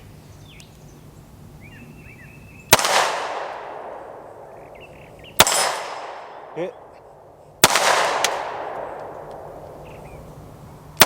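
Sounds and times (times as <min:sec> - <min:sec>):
faint bird chirps: 0:00.2 - 0:01.0, 0:04.5 - 0:05.4, 0:09.8 - 0:10.3
pistol shots: 0:02.7 - 0:04.3, 0:05.4 - 0:06.9, 0:07.6 - 0:09.7.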